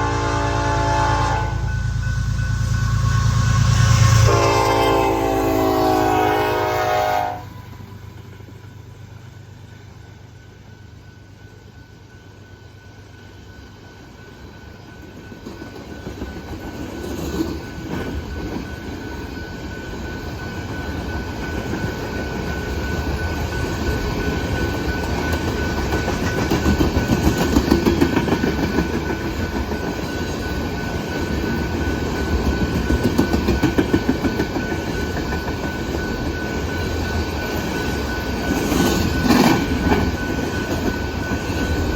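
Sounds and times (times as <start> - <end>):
train wheels rumbling on rail: 0.0 - 41.9
rhythmic clatter of wheels: 9.3 - 41.9.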